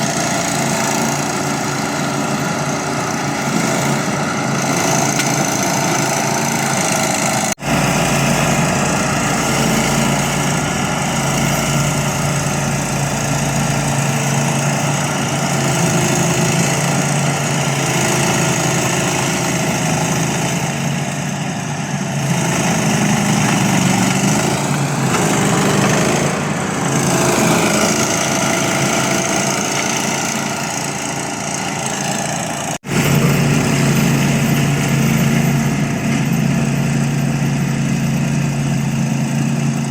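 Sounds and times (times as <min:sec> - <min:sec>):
lawn mower engine running: 0:00.0 - 0:39.9.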